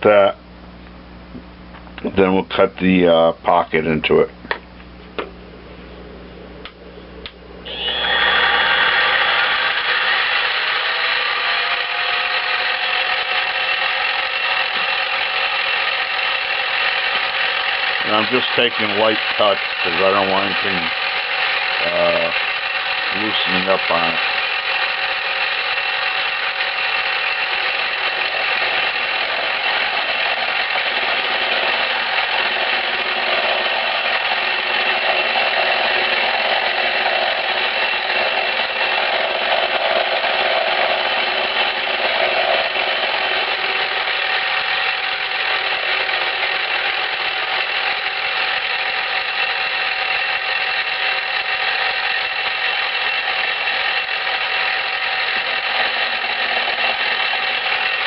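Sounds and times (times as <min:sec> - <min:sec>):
milling machine motor whine: 0:07.6 - 0:58.0
cutting hiss: 0:07.7 - 0:32.8.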